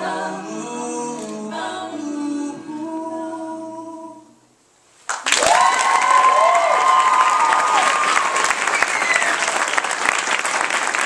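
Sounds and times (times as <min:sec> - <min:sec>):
audience applauding loudly: 0:05.1 - 0:11.0.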